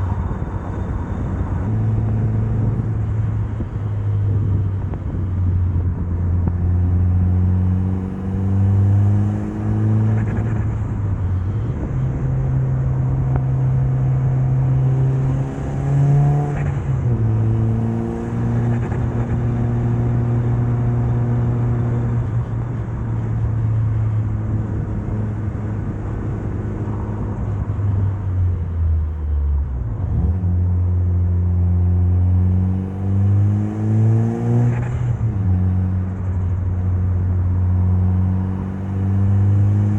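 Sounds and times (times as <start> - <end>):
car engine revving through gears: 6.4 - 10.9, 12.9 - 22.4, 30.0 - 30.7, 31.6 - 36.4, 37.6 - 39.9.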